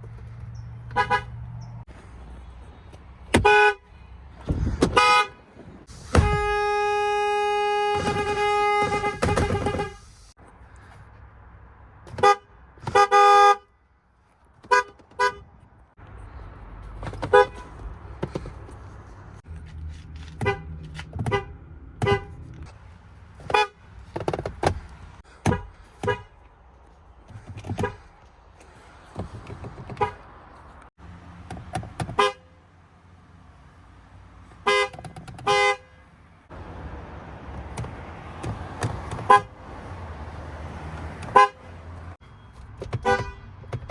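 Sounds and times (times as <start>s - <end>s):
car horns honking: 0.8s - 1.8s, 3.3s - 10.3s, 12.1s - 13.7s, 14.6s - 15.6s, 17.0s - 18.7s, 20.3s - 22.7s, 23.4s - 26.5s, 27.4s - 28.1s, 29.2s - 30.5s, 32.0s - 32.6s, 34.6s - 36.1s, 39.0s - 39.6s, 41.1s - 43.9s.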